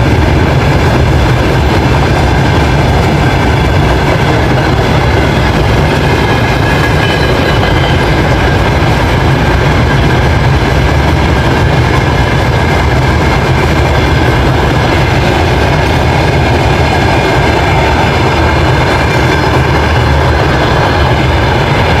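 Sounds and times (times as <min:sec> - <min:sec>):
train wheels rumbling on rails: 0:00.0 - 0:22.0.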